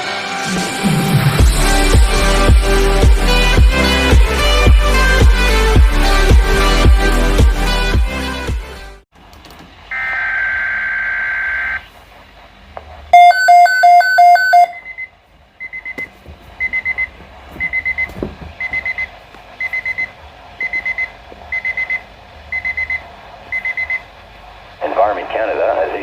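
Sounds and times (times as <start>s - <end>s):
high beeping alarm: 13.1s - 15.9s
loud beeps: 13.2s - 16.0s.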